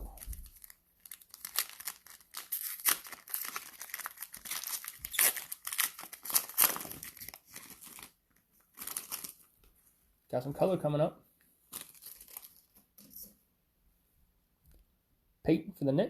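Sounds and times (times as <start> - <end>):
cellophane crinkling: 0.0 - 9.6, 11.7 - 13.3.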